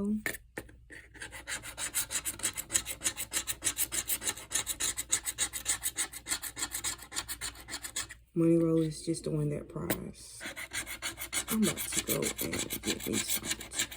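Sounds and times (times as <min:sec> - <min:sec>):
scratching a scratch-off ticket: 0:01.1 - 0:08.1, 0:10.4 - 0:13.9.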